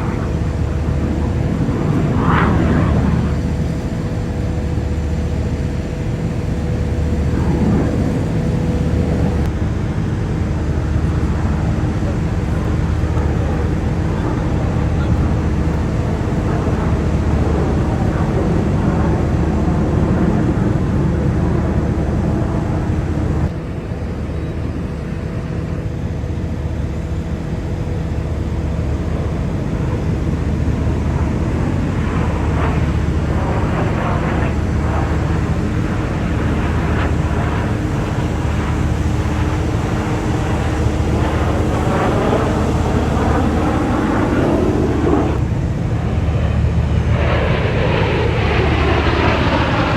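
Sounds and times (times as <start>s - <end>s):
voices: 0.0s - 21.2s, 27.9s - 45.8s
aircraft noise: 0.0s - 49.9s
aircraft passing overhead: 0.0s - 49.9s.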